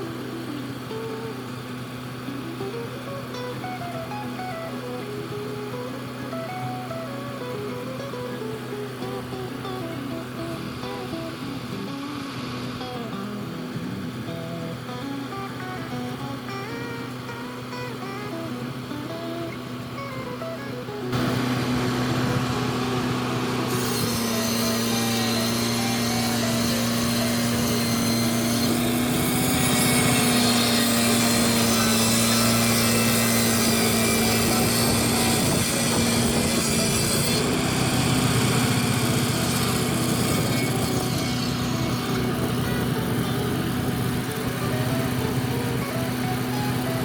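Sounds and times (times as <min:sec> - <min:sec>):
engine running steadily: 0:00.0 - 0:47.0
saw blade cutting through log: 0:21.2 - 0:42.9.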